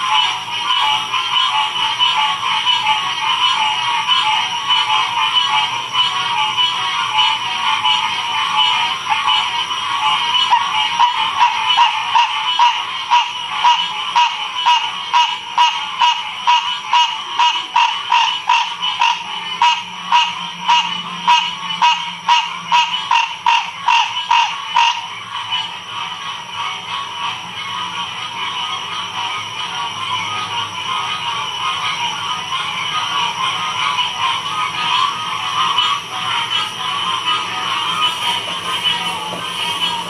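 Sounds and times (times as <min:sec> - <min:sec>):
chorus of frogs calling: 0:00.0 - 0:40.0
loud rhythmic frog call: 0:00.0 - 0:40.0.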